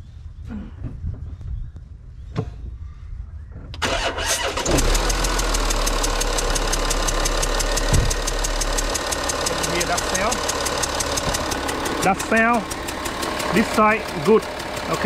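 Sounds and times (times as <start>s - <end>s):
diesel engine cranking and starting: 3.8s - 15.0s
diesel engine idling with clatter: 4.4s - 15.0s.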